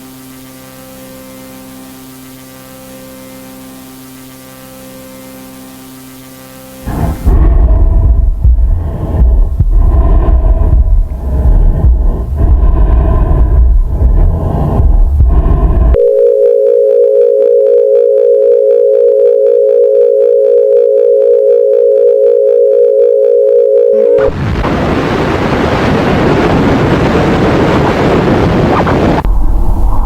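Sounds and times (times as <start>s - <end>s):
hissing static: 0.0s - 16.2s, 23.9s - 30.0s
steady electronic tone: 0.0s - 24.6s
low rumbling noise: 6.8s - 16.2s, 23.8s - 30.0s.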